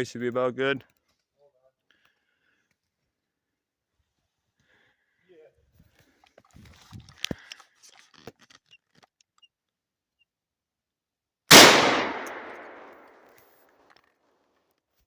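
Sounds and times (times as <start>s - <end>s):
echoing gunshot: 11.5s - 13.2s.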